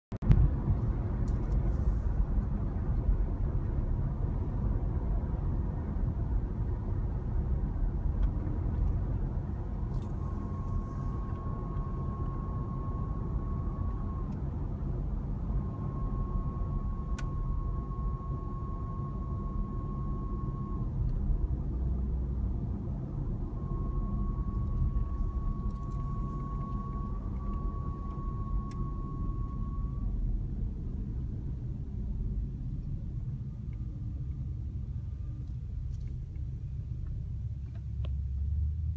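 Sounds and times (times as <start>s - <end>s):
road and drivetrain rumble: 0.1s - 38.9s
thin steady whistle: 10.0s - 14.4s, 15.5s - 20.9s, 23.4s - 30.2s.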